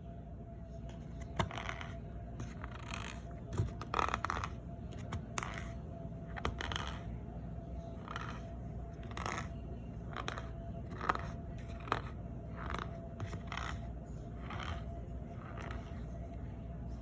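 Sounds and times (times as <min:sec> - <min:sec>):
cornstarch squeaking and crunching: 0:07.8 - 0:16.2.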